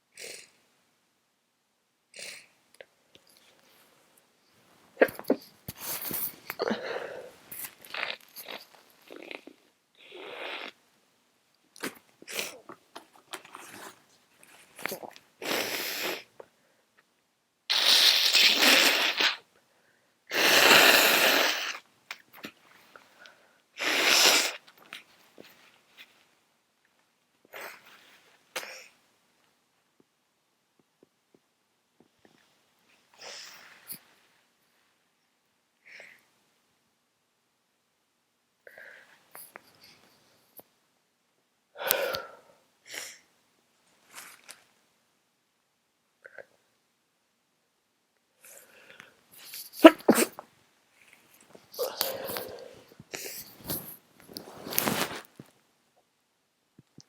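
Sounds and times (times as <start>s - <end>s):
small sniffs: 5.4s - 8.6s, 13.5s - 16.3s, 17.7s - 19.4s, 20.3s - 21.8s, 22.8s - 26.1s, 33.2s - 34.2s, 48.4s - 50.4s, 51.0s - 55.3s
voiced breath: 6.6s - 7.4s
person sneezing: 49.4s - 50.4s, 51.8s - 53.8s.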